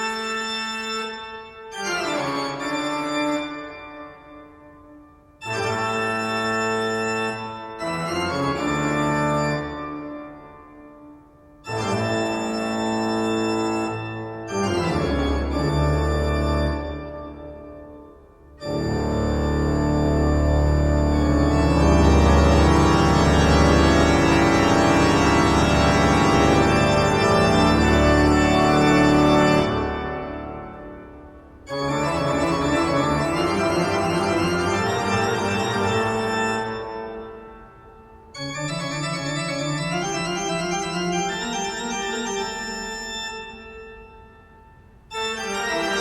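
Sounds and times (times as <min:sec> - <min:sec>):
organ-like keyboard chords: 0:00.0 - 0:46.0.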